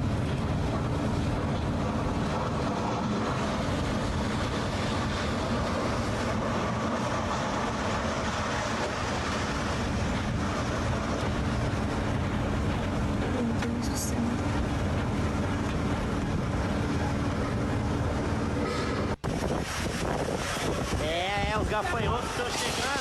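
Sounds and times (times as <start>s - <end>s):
low hum: 0.0s - 21.0s
strong storm wind blowing: 0.0s - 23.0s.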